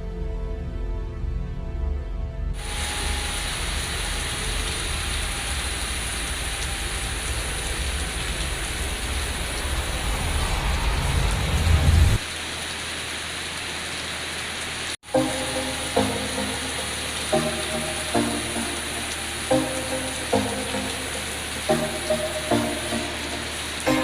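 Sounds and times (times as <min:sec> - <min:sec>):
music: 0:00.0 - 0:02.6, 0:15.1 - 0:24.0
waterfall rushing: 0:02.6 - 0:24.0.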